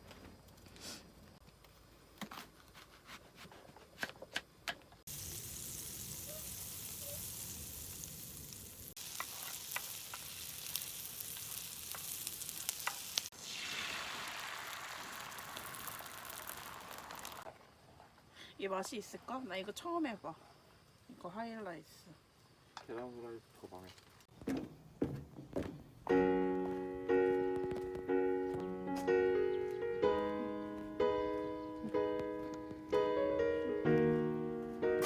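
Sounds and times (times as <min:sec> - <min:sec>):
food sizzling in a frying pan: 0:05.1 - 0:17.5.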